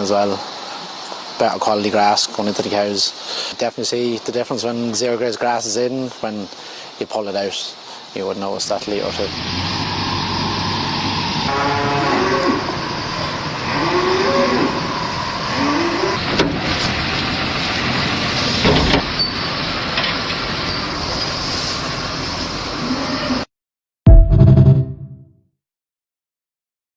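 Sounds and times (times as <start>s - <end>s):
steady background noise: 0.0s - 18.0s
cows mooing: 11.5s - 12.8s, 13.6s - 14.9s, 15.5s - 16.2s.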